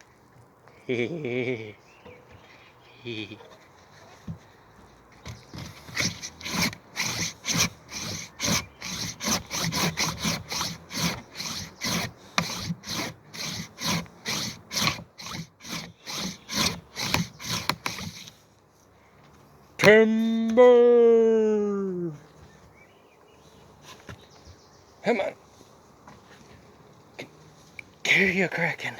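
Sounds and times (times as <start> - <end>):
hand saw cutting wood: 5.2 - 18.4
man shouting: 19.8 - 22.2.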